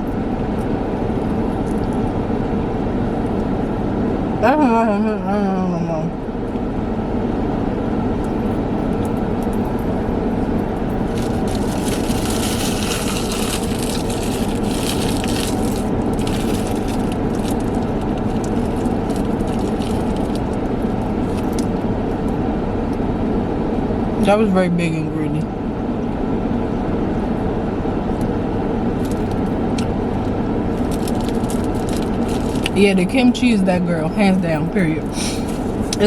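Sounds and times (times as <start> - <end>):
car cabin hum: 0.0 - 36.0
crunchy food being eaten: 11.0 - 20.7, 29.1 - 32.8.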